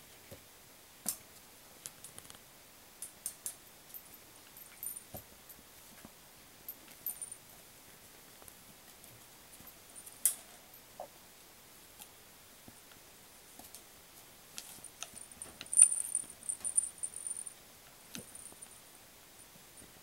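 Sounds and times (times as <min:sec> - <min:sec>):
toy jingling rattle: 0:15.2 - 0:17.5.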